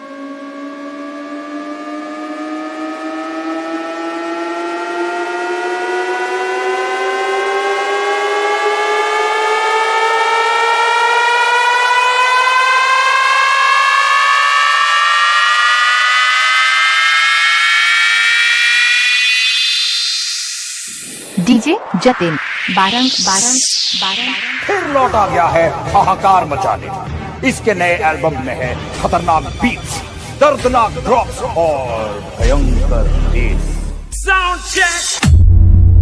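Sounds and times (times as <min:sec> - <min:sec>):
second synth tone climbing: 0:00.0 - 0:27.4
synth riser rising in pitch: 0:00.0 - 0:36.0.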